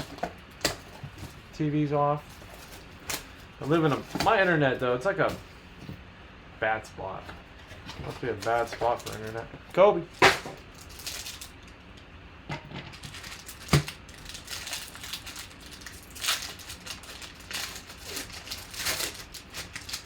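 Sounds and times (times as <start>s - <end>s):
trading card packaging crinkling: 2.2s - 5.4s, 7.7s - 11.8s, 12.9s - 20.0s.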